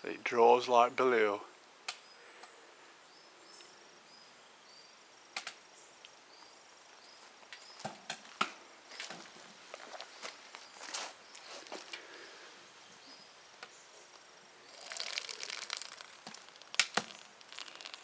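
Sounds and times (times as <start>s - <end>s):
wood fire crackling: 14.9s - 18.0s.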